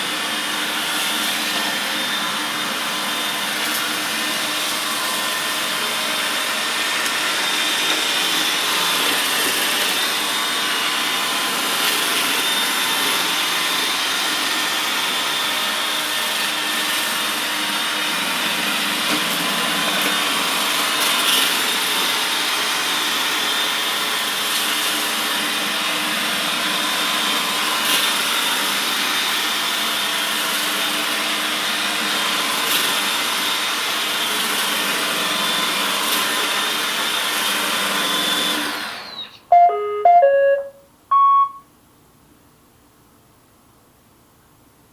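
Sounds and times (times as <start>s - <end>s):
robot vacuum whirring: 37.3s - 39.6s.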